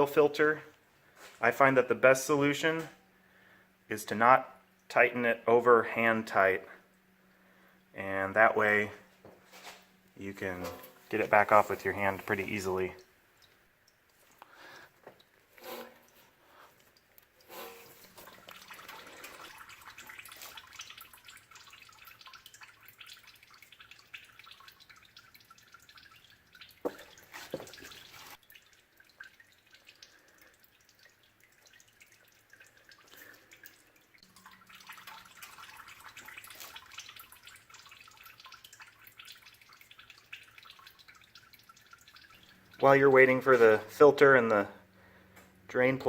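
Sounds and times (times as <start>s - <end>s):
oil dripping into a pan: 9.9s - 45.6s.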